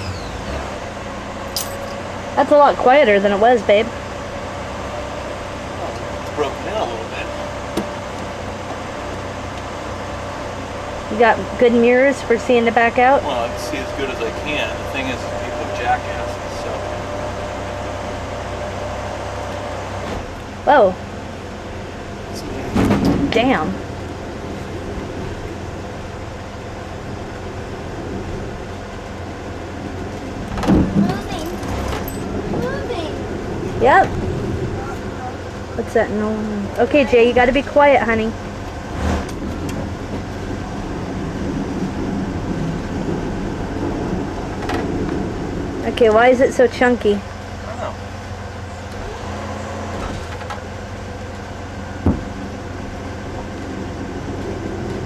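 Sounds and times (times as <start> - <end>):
motorhome engine running: 0.0 - 55.0
road and drivetrain rumble: 0.0 - 55.0
brake drum grinding: 22.3 - 55.0.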